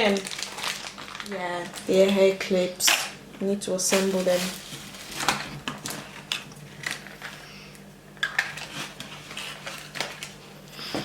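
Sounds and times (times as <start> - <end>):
packaging rustling: 0.0 - 2.2, 3.9 - 7.4, 8.2 - 10.5.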